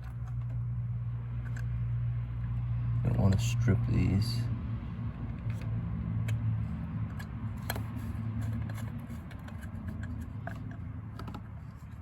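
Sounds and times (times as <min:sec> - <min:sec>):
low steady hum: 0:00.0 - 0:12.0
screwdriver bit clicking and scratching: 0:05.4 - 0:12.0.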